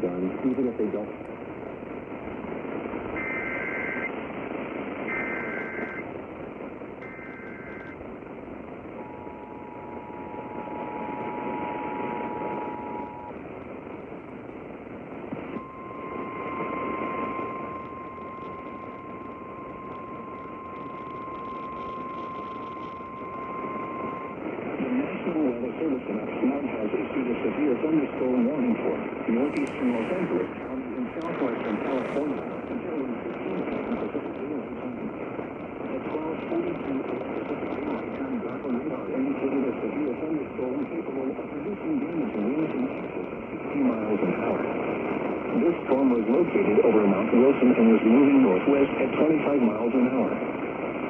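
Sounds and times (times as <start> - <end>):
radio static: 0.0 - 51.0
warbling data tones: 3.2 - 4.2, 5.0 - 6.1, 7.0 - 8.1, 8.8 - 13.4, 15.5 - 25.2.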